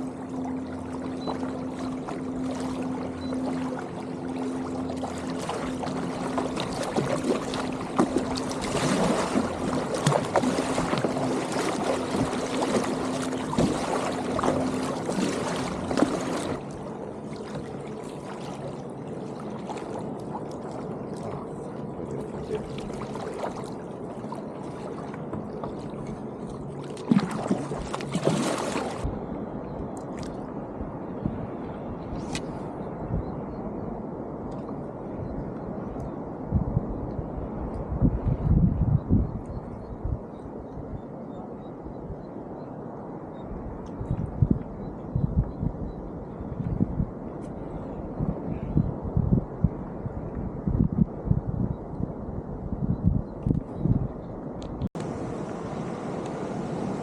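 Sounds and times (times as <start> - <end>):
water splashing against kayak: 0.0 - 29.1
steady low hum: 0.0 - 57.0.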